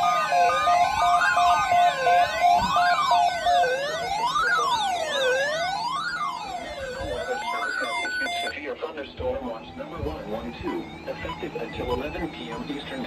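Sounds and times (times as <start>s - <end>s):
electronic siren wailing: 0.0s - 13.0s
rapid beeping tone: 6.2s - 13.0s.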